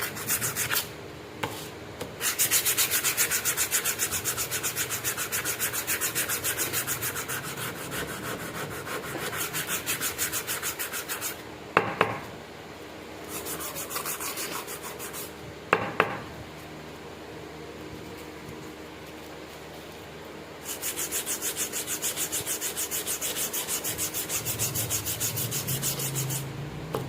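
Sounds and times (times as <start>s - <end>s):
knife rubbing on sharpener: 13.3s - 15.3s, 20.6s - 26.5s.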